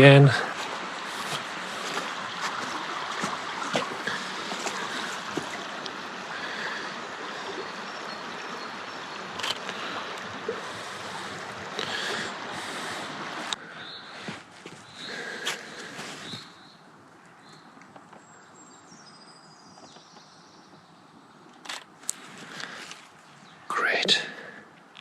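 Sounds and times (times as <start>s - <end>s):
flowing water rushing: 0.0s - 16.6s.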